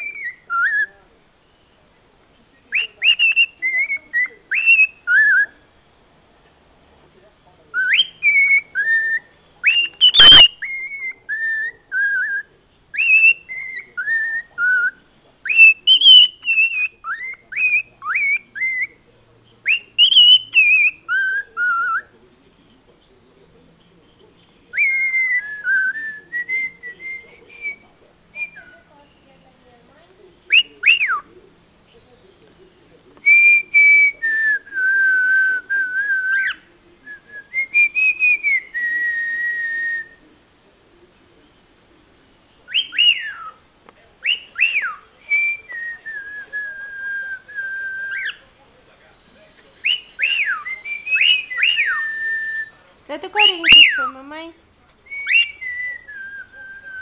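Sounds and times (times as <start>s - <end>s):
cockatiel whistling: 0.0s - 1.0s, 2.7s - 5.7s, 7.7s - 19.0s, 19.6s - 22.1s, 24.7s - 29.0s, 30.5s - 31.4s, 33.2s - 40.2s, 42.6s - 43.6s, 44.2s - 48.5s, 49.8s - 57.0s.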